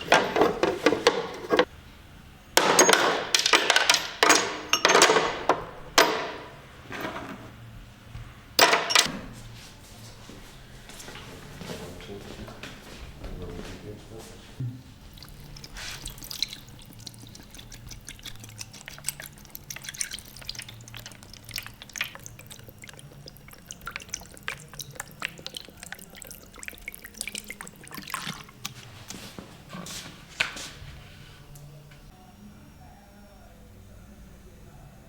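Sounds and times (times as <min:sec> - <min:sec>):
dripping liquid: 0:15.0 - 0:29.2.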